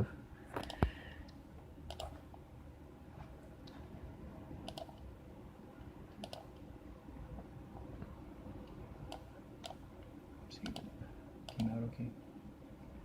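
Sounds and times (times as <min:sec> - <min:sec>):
faint low hum: 0:00.0 - 0:13.0
computer mouse clicks: 0:00.6 - 0:01.0, 0:01.9 - 0:02.3, 0:04.6 - 0:05.1, 0:06.2 - 0:06.7, 0:08.6 - 0:09.8, 0:10.6 - 0:11.8.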